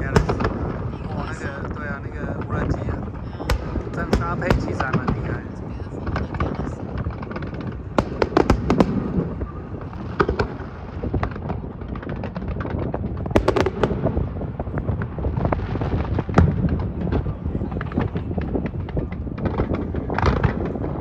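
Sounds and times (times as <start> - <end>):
fireworks bangs and crackling pops: 0.0 - 21.0.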